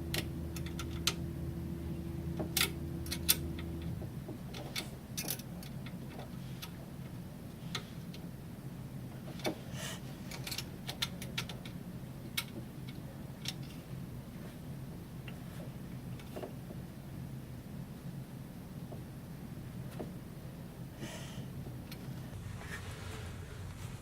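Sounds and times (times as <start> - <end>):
low steady hum: 0.0 - 24.0.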